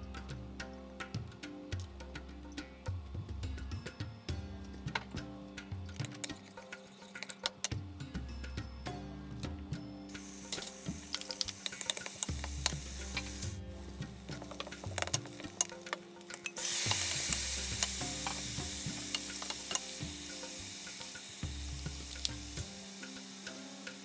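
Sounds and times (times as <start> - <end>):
food sizzling in hot oil: 10.1 - 24.0.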